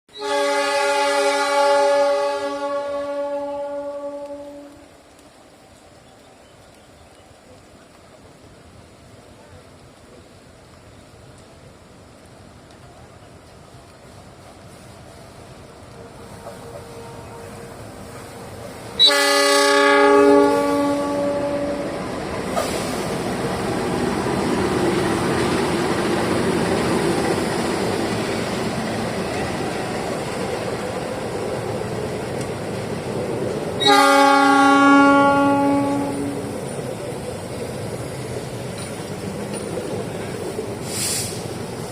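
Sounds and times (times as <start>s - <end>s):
locomotive horn blasts: 0.1s - 4.9s, 16.0s - 22.0s, 33.8s - 36.5s
train running rumble and wheel clatter: 0.2s - 41.9s.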